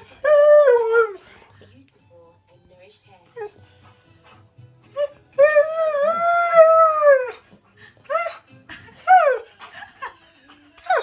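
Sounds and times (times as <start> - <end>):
husky howling: 5.4 - 7.4.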